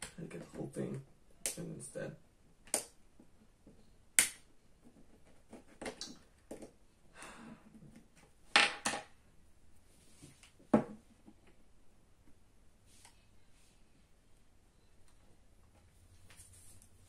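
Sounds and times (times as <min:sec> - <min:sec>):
prying tool clicks and snaps: 0:04.2 - 0:04.4.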